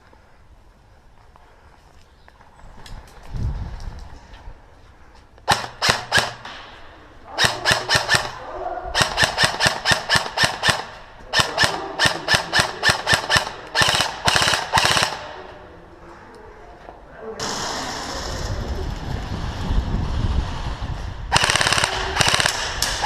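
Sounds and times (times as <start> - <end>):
airsoft guns firing: 5.5 - 8.4, 9.0 - 15.7, 21.3 - 23.0.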